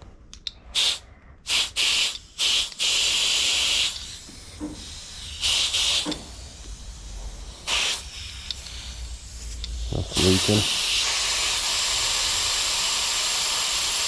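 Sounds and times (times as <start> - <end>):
compressed air hissing: 0.0 - 14.0.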